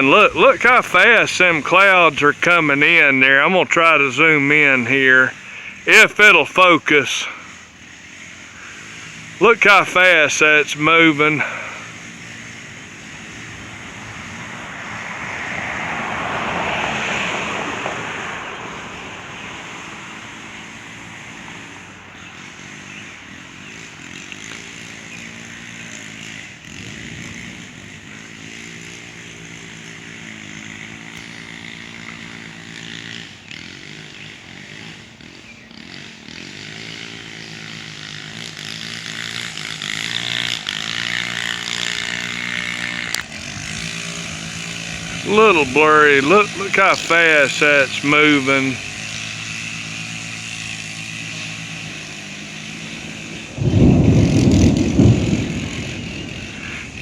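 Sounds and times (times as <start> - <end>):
distant string trimmer engine: 0.0 - 57.0
broad whooshing: 53.5 - 57.0.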